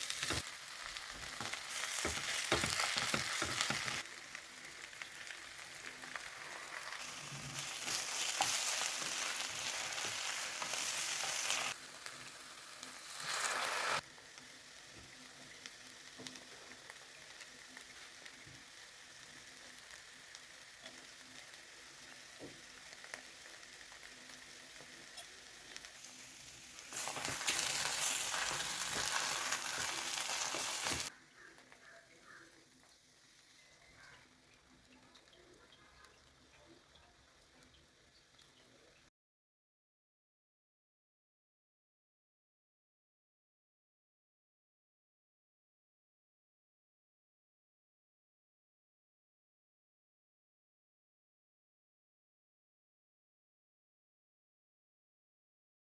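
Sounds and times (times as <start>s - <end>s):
faint crackles: 0.0s - 14.0s
food sizzling in oil: 0.0s - 39.0s.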